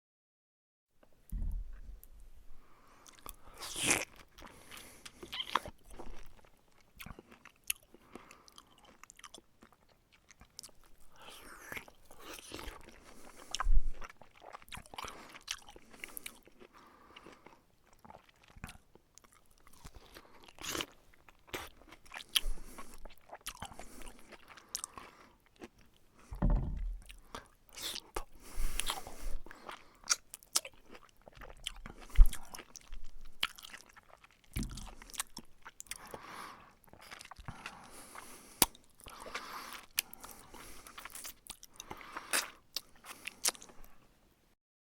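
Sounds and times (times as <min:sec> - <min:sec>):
person chewing and slurping: 0:03.0 - 0:44.0
crunchy fruit bites: 0:10.4 - 0:25.8, 0:26.4 - 0:36.2.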